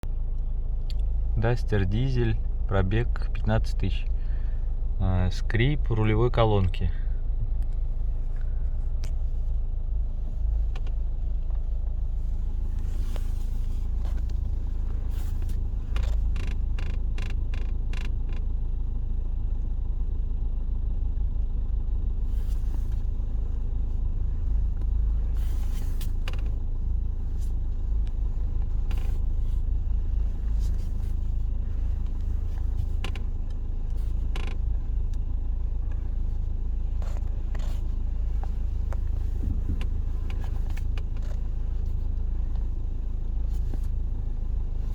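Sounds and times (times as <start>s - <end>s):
diesel engine idling: 0.1s - 44.9s
steering column creaks: 15.4s - 18.4s, 34.2s - 34.7s.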